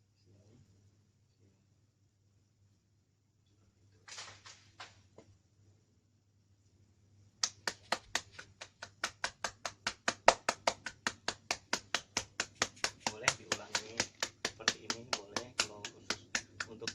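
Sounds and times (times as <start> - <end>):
sharp hand slaps: 7.4 - 16.9.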